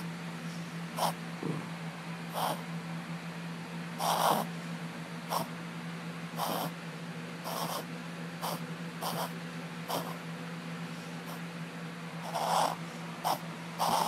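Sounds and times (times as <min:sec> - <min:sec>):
dog reverse sneezing: 0:01.0 - 0:01.2, 0:02.3 - 0:02.6, 0:04.0 - 0:04.5, 0:05.3 - 0:05.5, 0:06.4 - 0:06.7, 0:07.4 - 0:10.2, 0:12.2 - 0:14.0.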